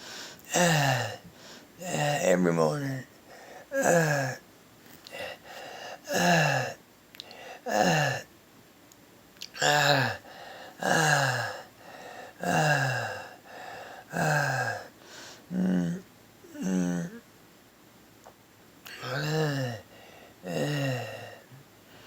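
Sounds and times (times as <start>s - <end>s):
harsh gasping breaths: 0.0s - 2.2s, 3.2s - 8.3s, 9.6s - 16.0s, 18.9s - 22.0s.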